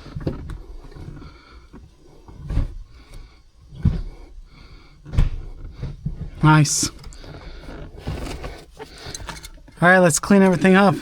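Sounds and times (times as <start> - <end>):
gear shifter clunks: 0.0 - 11.0.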